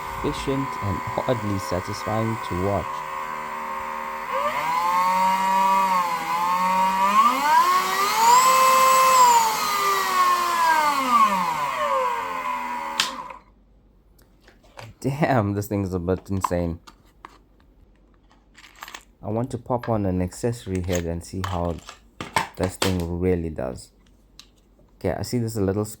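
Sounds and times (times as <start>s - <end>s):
rotary tool motor whine: 0.0s - 13.4s.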